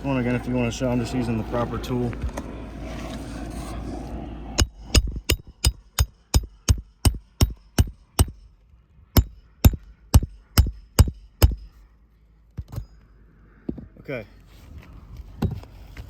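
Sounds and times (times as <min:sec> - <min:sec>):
hammer striking metal: 0:04.6 - 0:08.4, 0:09.2 - 0:11.8.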